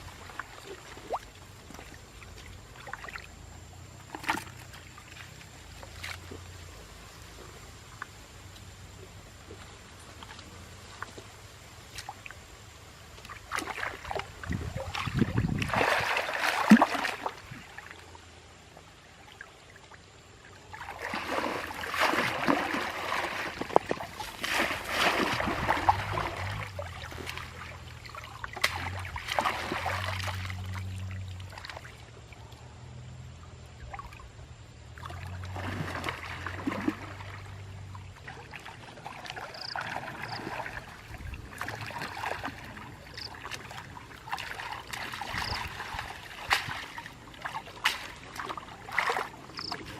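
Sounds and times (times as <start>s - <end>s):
water splashing and trickling: 0.0s - 49.9s.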